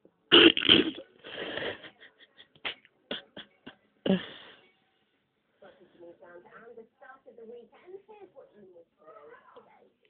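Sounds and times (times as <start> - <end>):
cat sneezing bursts: 0.3 - 1.0.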